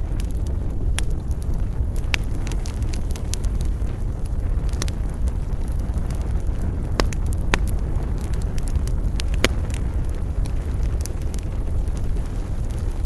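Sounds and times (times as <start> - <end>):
campfire crackling and popping: 0.0 - 13.0
low rumble: 0.0 - 13.0.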